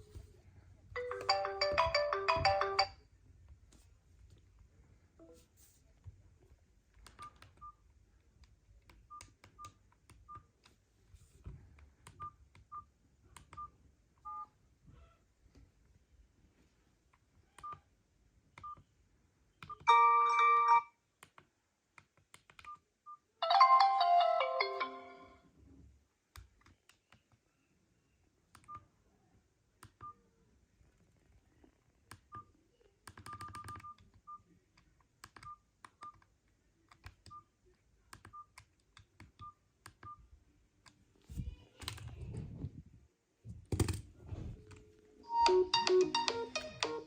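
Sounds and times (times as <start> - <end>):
faint phone beeps and clicks: 17.6 - 17.8, 33.2 - 34.5.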